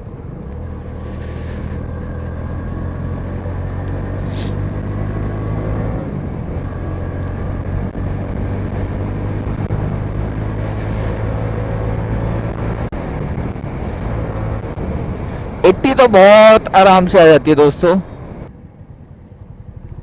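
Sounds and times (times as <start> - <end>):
motorcycle engine accelerating: 0.0 - 17.0, 17.8 - 20.0
brief hiss: 4.2 - 4.6.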